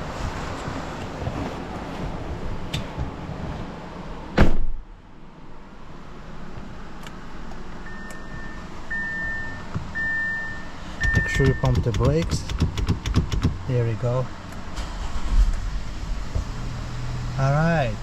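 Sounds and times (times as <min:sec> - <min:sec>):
loud thump: 0:04.4 - 0:04.8, 0:11.0 - 0:13.6
dashboard warning chime beeping: 0:07.8 - 0:13.5.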